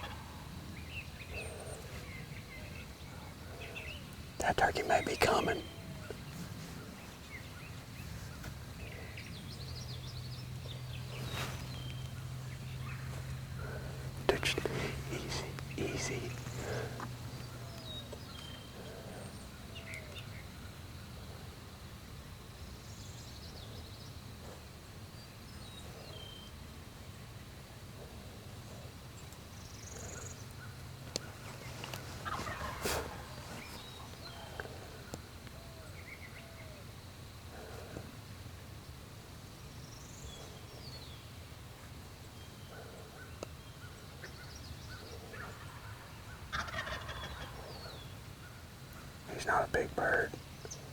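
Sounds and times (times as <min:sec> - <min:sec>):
turkey gobbling: 0:00.0 - 0:00.4, 0:32.2 - 0:33.4, 0:45.6 - 0:47.7
small birds chirping: 0:00.0 - 0:50.9.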